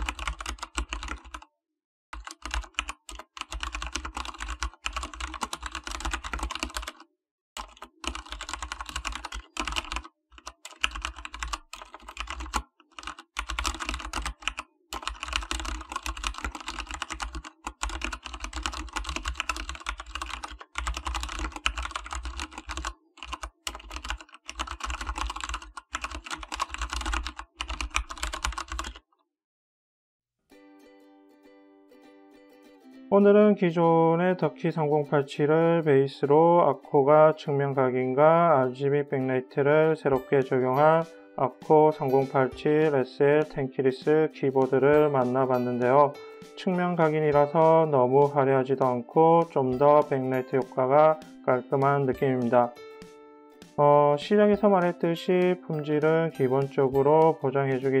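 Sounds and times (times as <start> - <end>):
mechanical keyboard typing: 0.0 - 1.4, 2.2 - 7.0, 7.6 - 29.0.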